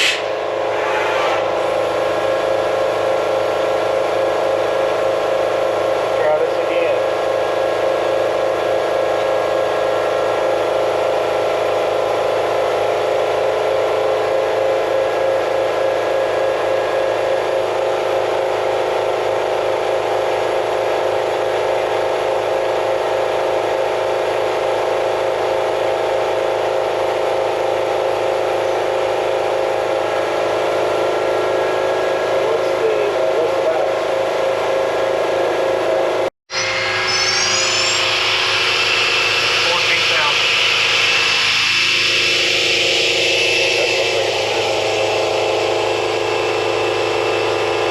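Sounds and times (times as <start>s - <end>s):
machining center whirring: 0.0s - 47.9s
held machine tones: 36.5s - 47.0s.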